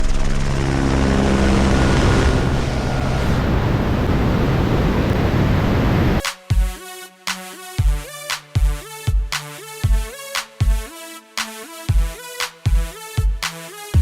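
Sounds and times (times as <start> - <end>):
aircraft engine drone: 0.0 - 6.2
wind rush: 0.0 - 6.2
music: 6.2 - 14.0.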